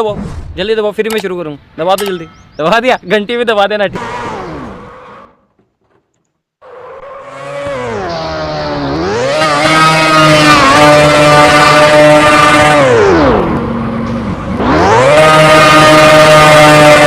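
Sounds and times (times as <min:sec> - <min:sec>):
motorcycle engine revving hard: 0:03.9 - 0:05.4, 0:06.6 - 0:17.0.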